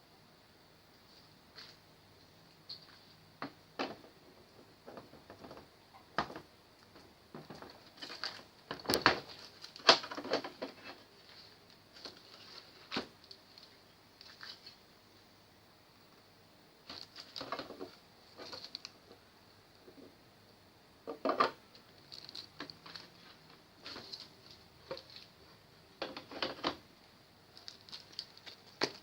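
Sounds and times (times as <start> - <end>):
parts being handled: 16.8 - 19.2, 21.1 - 25.4, 27.5 - 29.0.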